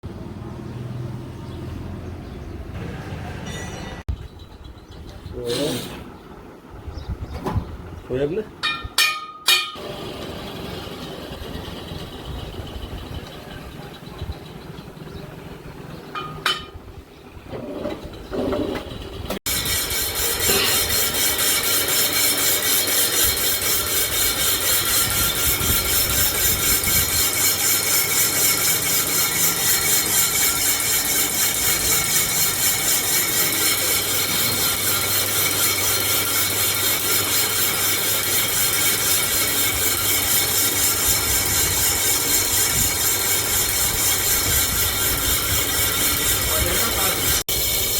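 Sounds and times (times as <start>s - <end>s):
workshop sounds: 0.2s - 47.9s
lathe tool scraping metal: 17.5s - 47.9s.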